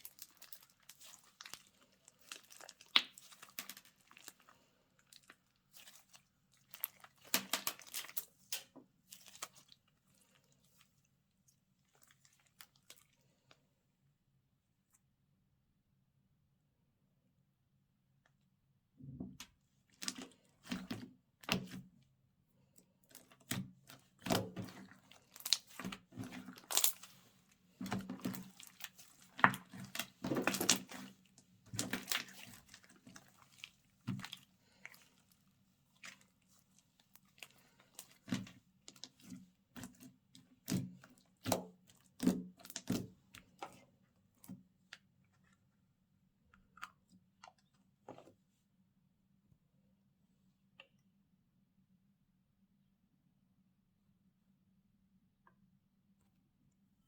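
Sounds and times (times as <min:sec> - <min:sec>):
slime squelching by hand: 0:00.0 - 0:13.6, 0:19.4 - 0:22.0, 0:23.0 - 0:48.3.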